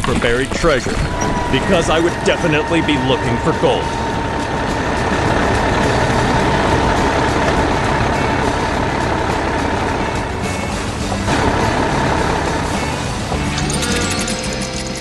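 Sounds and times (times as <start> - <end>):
background music: 0.0 - 15.0
excavator engine running: 0.0 - 15.0.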